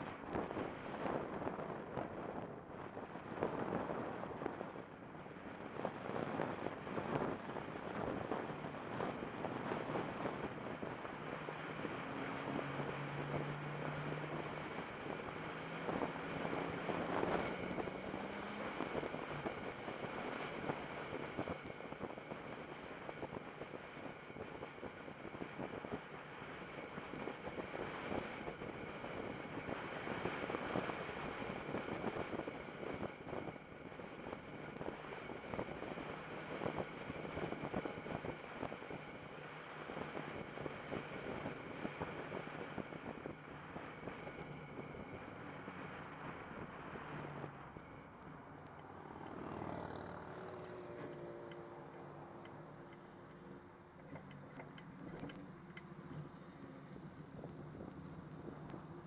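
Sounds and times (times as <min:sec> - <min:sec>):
turbo whine: 0:00.0 - 0:59.0
car engine running: 0:03.5 - 0:32.8.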